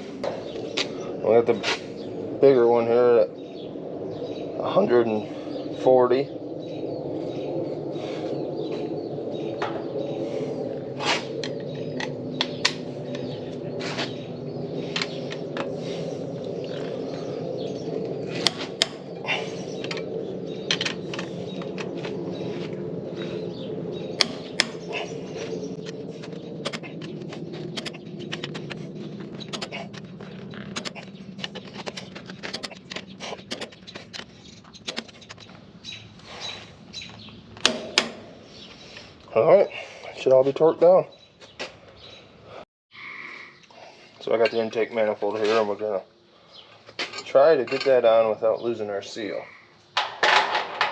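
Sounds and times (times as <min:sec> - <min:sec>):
steady hum: 0:14.2 - 0:36.2
torque wrench clicking and ratcheting: 0:18.4 - 0:19.1, 0:24.2 - 0:25.0, 0:26.7 - 0:27.0, 0:27.8 - 0:28.8, 0:29.5 - 0:30.0, 0:30.8 - 0:35.4.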